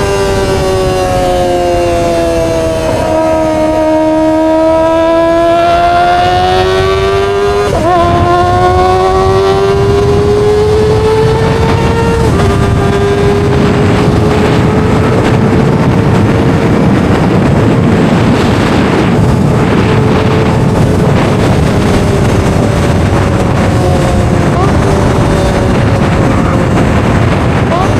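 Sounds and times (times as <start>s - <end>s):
motorcycle engine revving high: 0.0s - 27.9s
wind noise on microphone: 0.0s - 27.9s.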